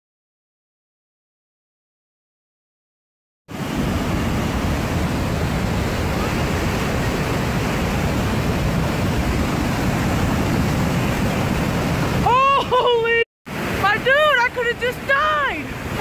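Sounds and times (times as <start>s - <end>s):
floodwater rushing: 3.5s - 16.0s.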